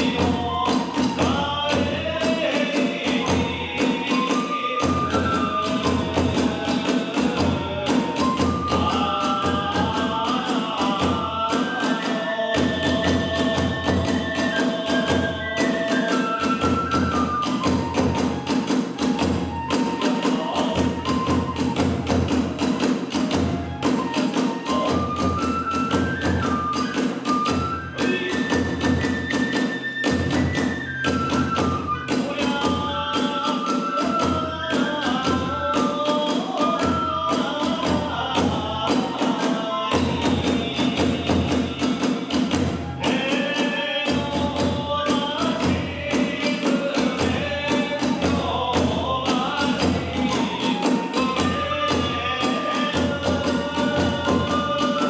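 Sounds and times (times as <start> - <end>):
bamboo flute high melody: 0.0 - 55.0
drums beating rapid rhythm: 0.0 - 55.0.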